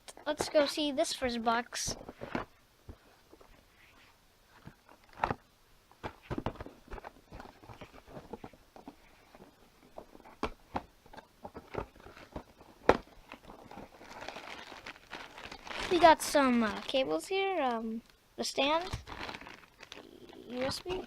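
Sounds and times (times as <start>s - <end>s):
items tapping and knocking: 6.0s - 13.9s.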